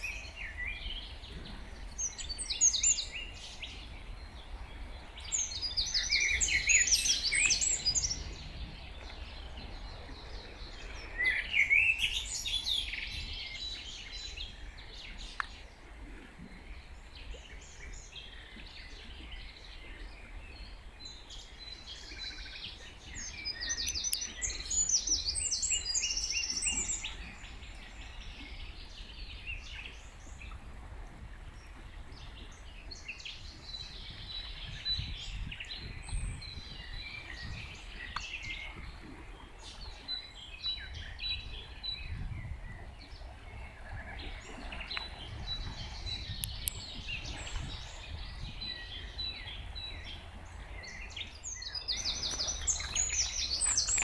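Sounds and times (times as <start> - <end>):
songbirds singing and chirping: 0.0 - 54.0.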